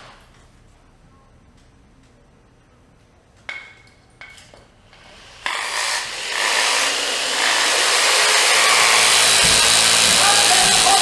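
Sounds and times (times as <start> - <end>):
harsh rasping noise: 7.7 - 11.0.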